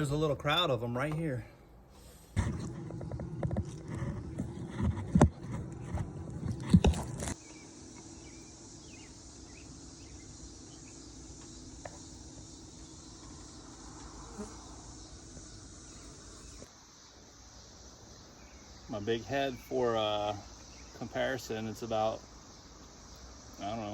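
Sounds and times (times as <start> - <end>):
knocks and scrapes: 2.4 - 7.4
bees buzzing: 2.4 - 19.2.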